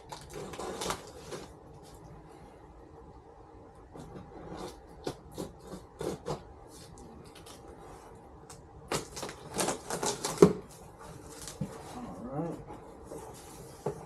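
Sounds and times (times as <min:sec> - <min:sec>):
cardboard scraping and rubbing: 0:00.2 - 0:01.6, 0:03.9 - 0:07.0, 0:09.0 - 0:14.0.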